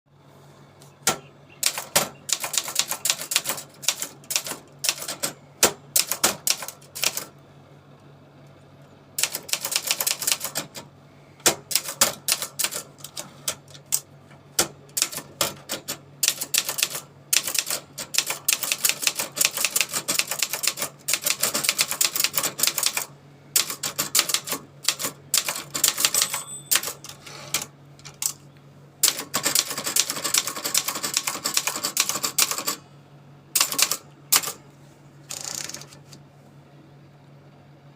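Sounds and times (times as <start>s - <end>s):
faint steady hum: 0.1s - 37.9s
typewriter key strikes: 14.6s - 27.2s.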